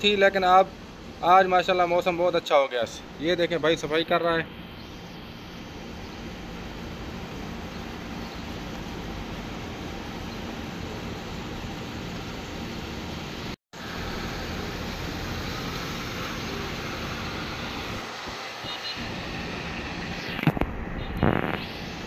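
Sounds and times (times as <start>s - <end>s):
traffic on wet road: 6.4s - 22.0s.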